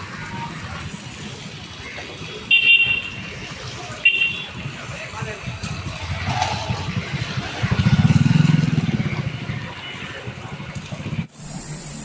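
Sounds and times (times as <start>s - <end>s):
street noise: 0.0s - 12.0s
motorcycle engine passing: 4.6s - 12.0s.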